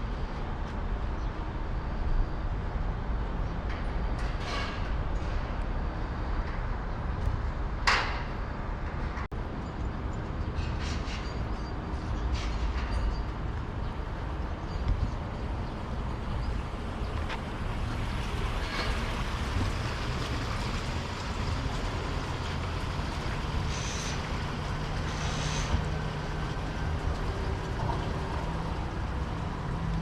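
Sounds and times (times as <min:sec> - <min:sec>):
road traffic rumble: 0:00.0 - 0:30.0.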